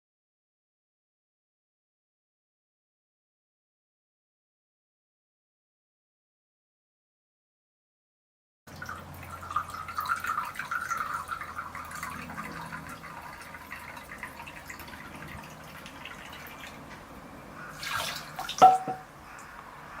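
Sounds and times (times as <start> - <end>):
water trickling and dripping: 8.7 - 19.7
water splash: 17.6 - 19.0
bamboo knocking on stone: 18.6 - 19.1.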